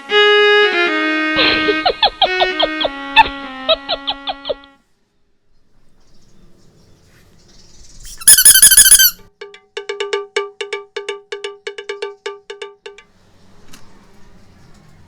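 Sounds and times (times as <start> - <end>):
rubber balloon squeaking: 8.1 - 9.3.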